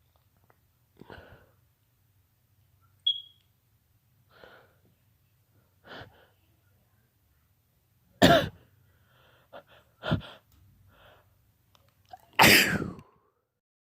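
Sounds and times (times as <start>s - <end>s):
quick breaths: 8.9s - 11.4s
man sneezing: 12.4s - 13.0s.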